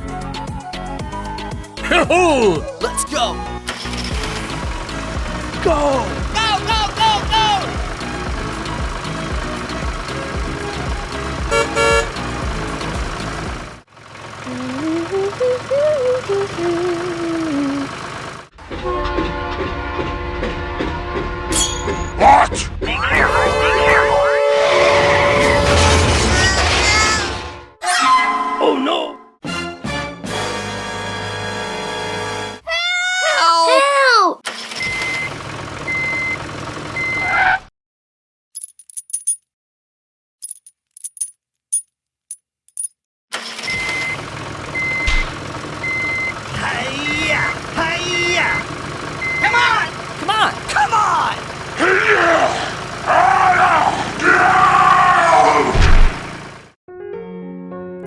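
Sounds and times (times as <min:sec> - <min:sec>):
vehicle engine rumble: 0:03.3 - 0:24.2, 0:34.7 - 0:37.5, 0:43.4 - 0:56.8
horn-like chord: 0:11.4 - 0:12.5, 0:23.3 - 0:26.1
reversing alarm beeping: 0:34.8 - 0:36.4, 0:37.0 - 0:37.4, 0:43.6 - 0:49.9
regular clatter: 0:38.6 - 0:39.5, 0:40.4 - 0:43.6.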